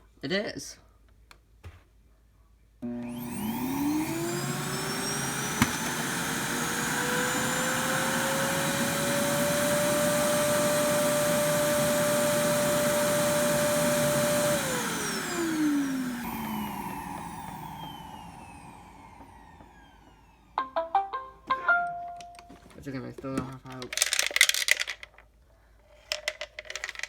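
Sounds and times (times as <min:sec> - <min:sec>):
vacuum motor whining: 0:02.8 - 0:20.6.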